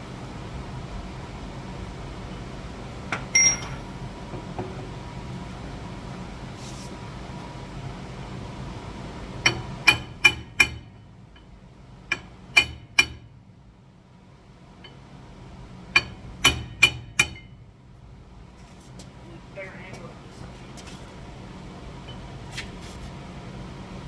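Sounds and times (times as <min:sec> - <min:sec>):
hammer striking steel: 0:03.4 - 0:04.0, 0:09.5 - 0:11.0, 0:12.1 - 0:13.3, 0:16.0 - 0:17.6.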